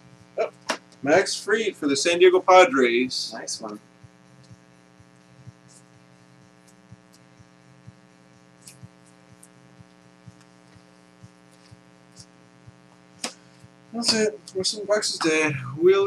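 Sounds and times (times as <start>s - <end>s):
low electrical hum: 0.0s - 16.0s
faint clicks and ticks: 3.6s - 13.0s.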